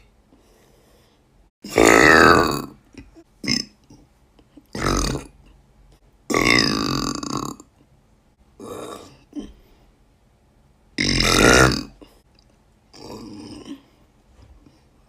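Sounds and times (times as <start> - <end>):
woman burping: 8.6 - 9.6.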